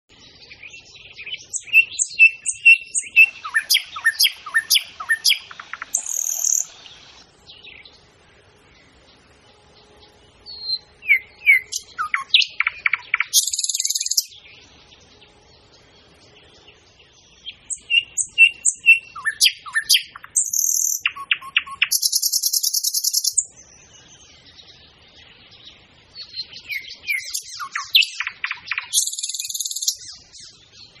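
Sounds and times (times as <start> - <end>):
short repeated bird chirps: 0.1 - 7.8, 9.8 - 31.0
falling whistled bird notes: 1.5 - 6.8, 10.5 - 14.3, 17.7 - 23.4.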